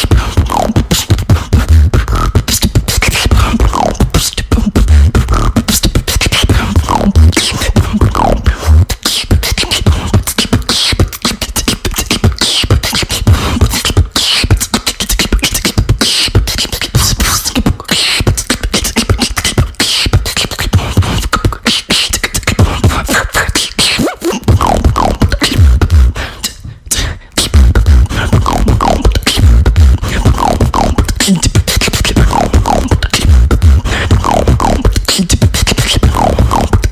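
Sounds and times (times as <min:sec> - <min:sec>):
woman beatboxing: 0:00.0 - 0:36.9.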